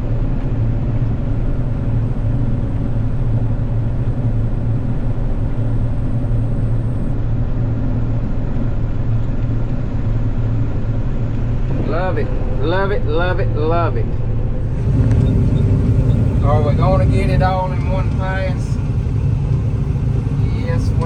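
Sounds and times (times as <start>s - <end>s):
combine harvester engine drone: 0.0s - 21.0s.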